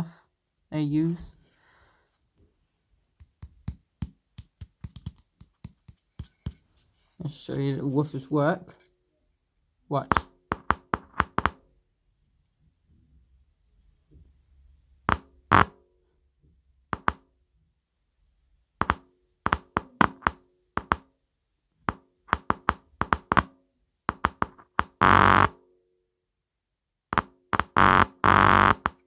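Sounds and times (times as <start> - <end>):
speaker crackling burst: 27.6 - 29.0.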